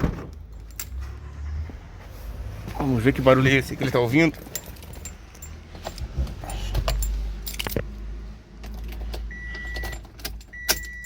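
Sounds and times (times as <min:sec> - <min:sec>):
car keys jangling: 0:00.5 - 0:01.2, 0:03.4 - 0:08.0, 0:08.6 - 0:11.0.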